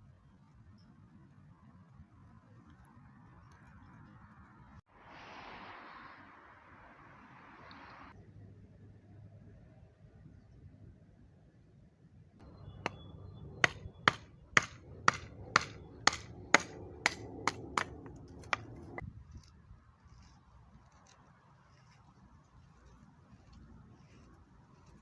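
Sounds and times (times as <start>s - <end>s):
sharp hammer-like strikes: 12.6s - 18.7s.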